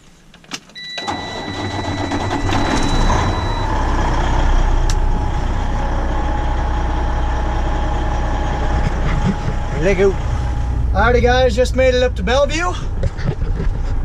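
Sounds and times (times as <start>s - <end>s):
truck engine starting and running: 0.4s - 14.0s
high warning chime: 0.8s - 3.9s.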